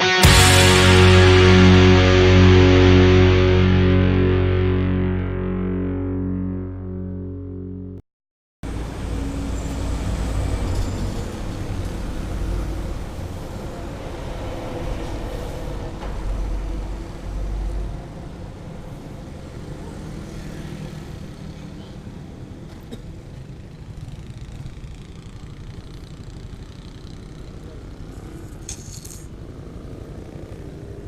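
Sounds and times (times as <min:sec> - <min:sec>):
road noise: 0:08.6 - 0:31.0
motorcycle engine running: 0:23.5 - 0:28.4.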